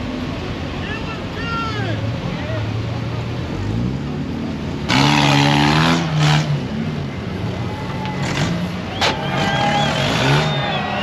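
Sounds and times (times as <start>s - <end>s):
race vehicle engine revving: 2.7s - 11.0s.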